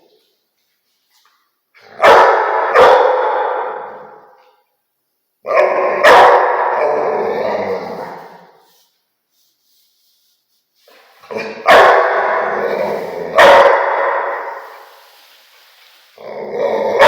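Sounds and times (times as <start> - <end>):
dog barking with echo: 1.9 - 4.4, 5.5 - 7.0, 11.4 - 12.7, 13.3 - 14.9.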